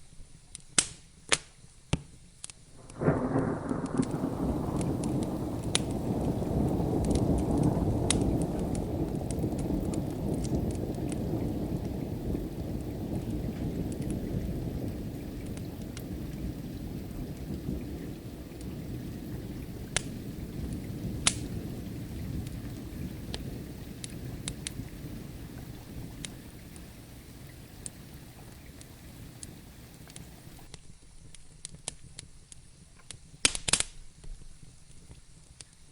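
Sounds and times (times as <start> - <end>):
wood fire crackling and popping: 0.5 - 35.8
steady rain: 2.6 - 30.8
low rumble of thunder: 2.8 - 30.7.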